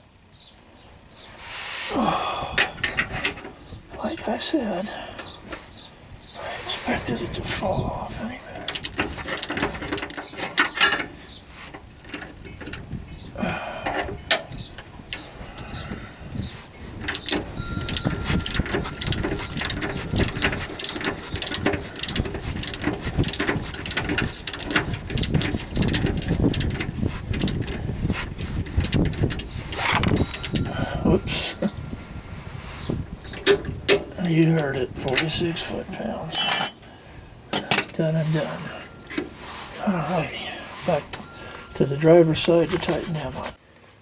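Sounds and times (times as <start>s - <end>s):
ratchet wrench clicking: 8.7s - 10.2s, 17.1s - 27.8s, 28.7s - 30.7s
metal clanks: 8.7s - 12.9s, 17.0s - 27.9s, 28.6s - 31.9s, 33.2s - 39.5s.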